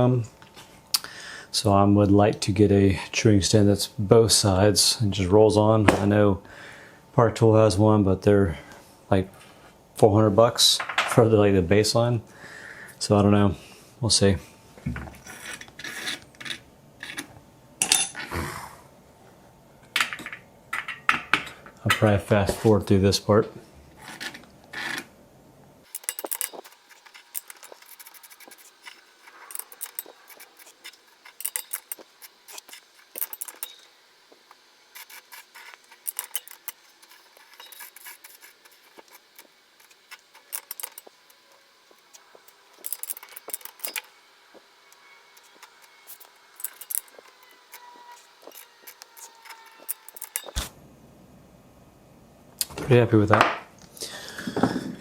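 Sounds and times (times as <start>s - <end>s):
metallic clicks and rattles: 25.9s - 33.9s, 35.0s - 44.1s, 45.4s - 50.7s.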